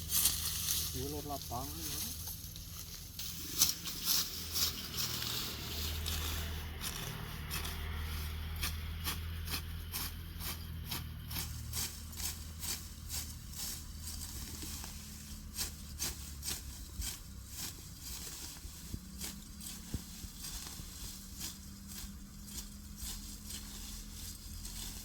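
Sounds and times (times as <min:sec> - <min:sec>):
sickle cutting grass: 0:00.0 - 0:25.0.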